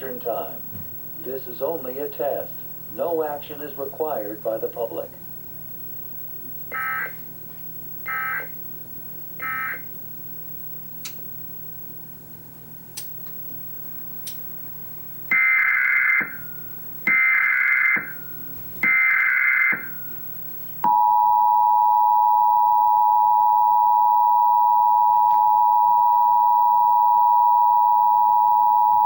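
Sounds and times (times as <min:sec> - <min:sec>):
warbling data tones: 0:06.6 - 0:07.3.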